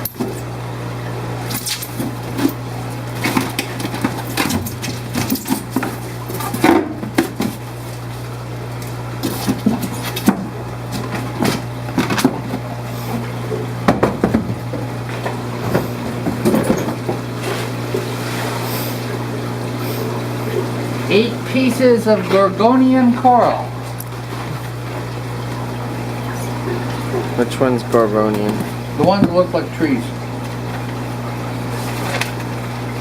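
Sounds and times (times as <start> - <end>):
steady low hum: 0.0 - 33.0
plastic containers clattering: 13.8 - 17.2.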